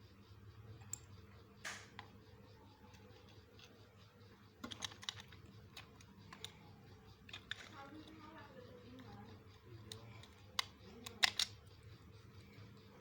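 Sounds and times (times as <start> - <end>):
plastic toy bricks clicking: 4.6 - 11.8.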